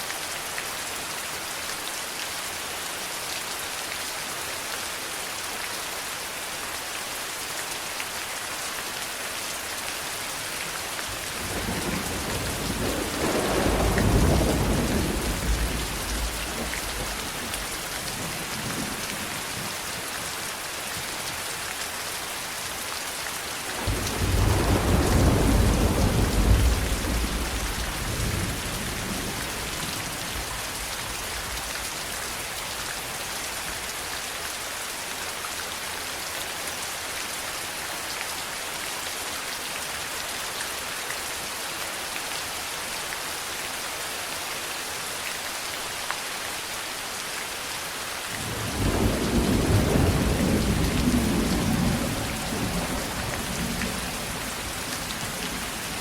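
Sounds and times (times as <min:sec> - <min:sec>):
thunder rolling: 0:11.5 - 0:18.9, 0:23.8 - 0:29.8, 0:48.4 - 0:56.0
heavy rain hissing: 0:48.3 - 0:56.0.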